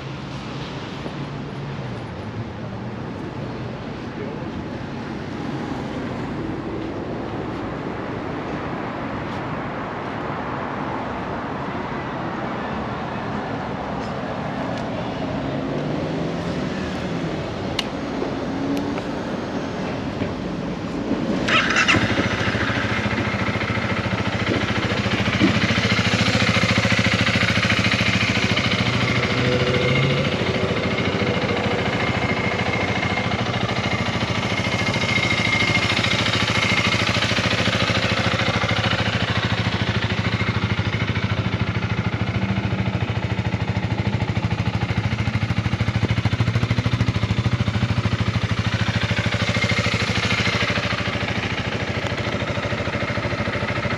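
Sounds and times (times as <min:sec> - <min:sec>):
motorcycle engine starting and idling: 0:21.2 - 0:53.9.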